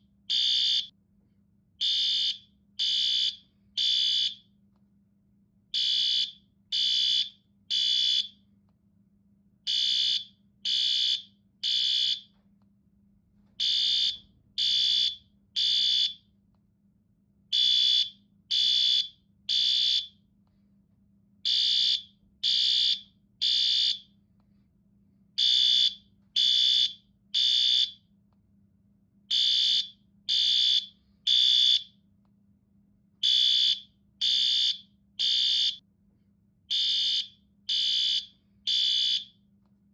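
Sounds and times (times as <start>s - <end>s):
fire alarm beeping: 0.2s - 1.0s, 1.8s - 4.5s, 5.7s - 8.4s, 9.7s - 12.4s, 13.6s - 16.3s, 17.5s - 20.2s, 21.4s - 24.2s, 25.4s - 28.0s, 29.3s - 32.0s, 33.2s - 35.8s, 36.7s - 39.4s.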